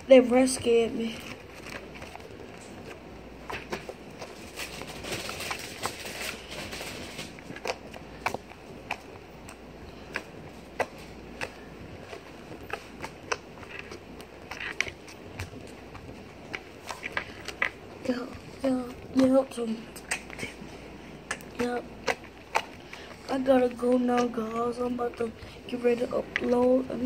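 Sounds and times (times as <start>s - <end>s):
slime clicking and popping: 7.4s - 20.6s, 21.2s - 25.3s.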